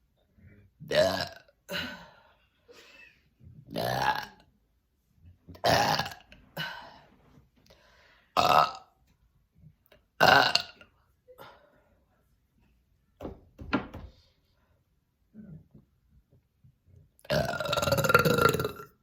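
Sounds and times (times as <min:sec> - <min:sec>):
woman burping: 0:00.9 - 0:02.2, 0:05.5 - 0:06.8, 0:08.4 - 0:08.9, 0:10.2 - 0:10.9, 0:17.3 - 0:19.0.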